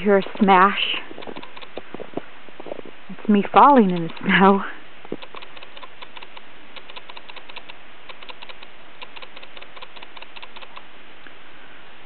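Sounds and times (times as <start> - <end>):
footsteps crunching through snow: 0.0 - 3.9.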